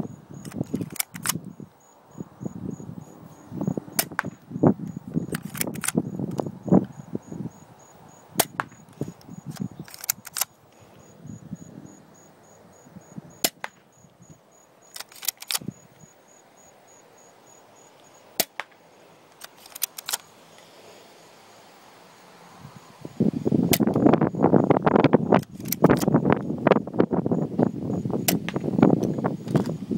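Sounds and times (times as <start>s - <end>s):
airsoft gun shots: 4.0s - 4.4s, 8.4s - 8.8s, 13.4s - 13.9s, 18.4s - 18.8s.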